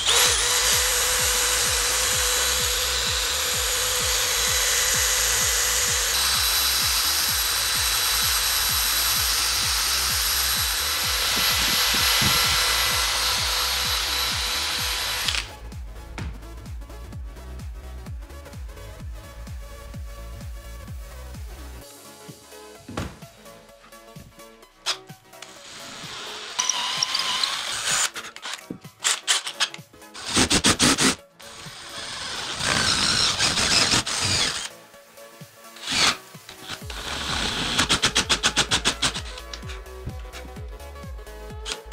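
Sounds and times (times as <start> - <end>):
power tool motor whining: 0.0 - 15.5, 24.9 - 29.6, 30.2 - 34.7, 35.8 - 40.5
electronic music with beat: 0.0 - 25.4, 32.6 - 41.9.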